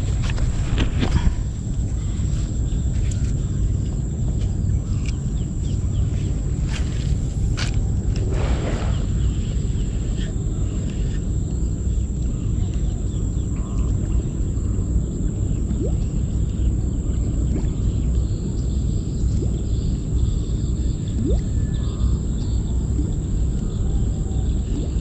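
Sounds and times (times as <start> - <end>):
wind buffeting microphone: 0.0 - 18.6.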